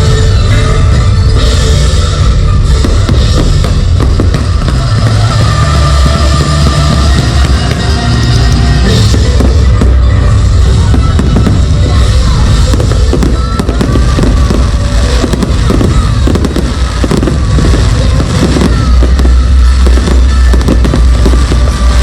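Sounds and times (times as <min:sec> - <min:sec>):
fireworks bangs and crackles: 0:00.0 - 0:22.0
loud show music with bass: 0:00.0 - 0:22.0.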